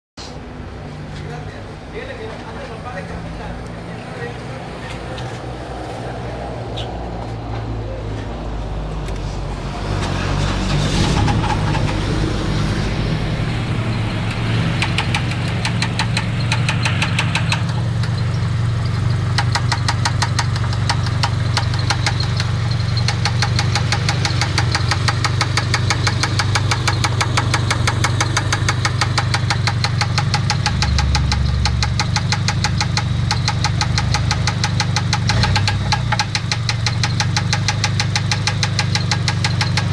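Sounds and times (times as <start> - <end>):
engine running: 0.2 - 39.9
rapid ticking engine knock: 9.6 - 39.9.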